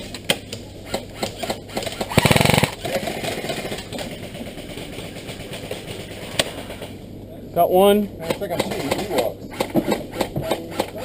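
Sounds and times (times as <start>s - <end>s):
airsoft rifle full-auto burst: 0.8s - 6.8s.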